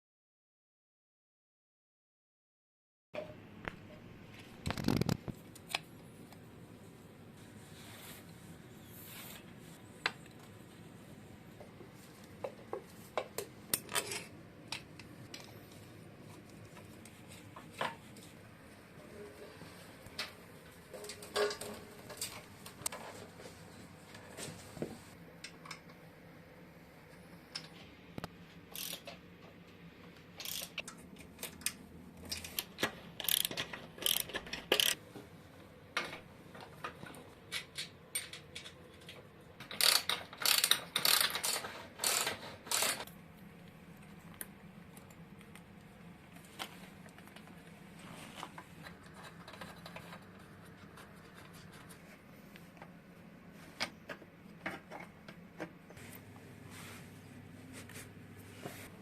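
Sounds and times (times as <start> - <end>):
hand tools clicking on metal: 30.4 - 31.8, 32.4 - 35.0.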